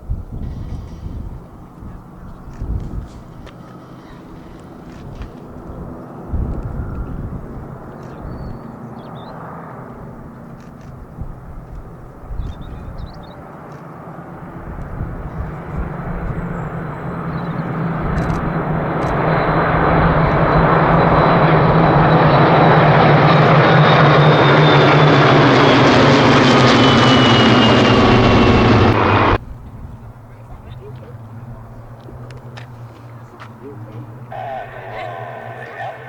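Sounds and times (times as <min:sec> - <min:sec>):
piston-engined aircraft flying past: 0:13.4 - 0:29.8.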